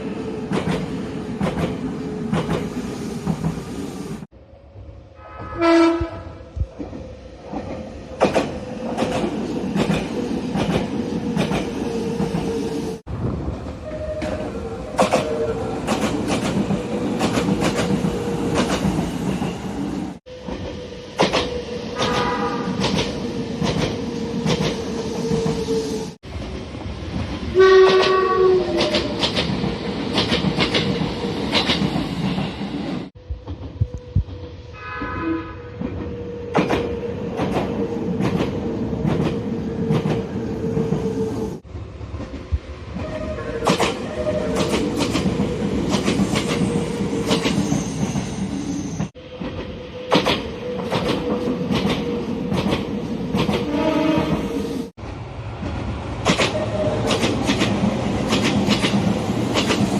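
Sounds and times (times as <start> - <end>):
train wheels clicking over rail joints: 0.5 - 3.6, 6.8 - 12.4, 15.0 - 19.5, 20.4 - 25.6, 27.2 - 32.6, 43.6 - 48.2, 49.0 - 53.7, 55.6 - 59.9
train horn blasts: 5.2 - 6.5, 22.0 - 22.8, 27.5 - 28.9, 34.7 - 35.8, 53.6 - 54.4.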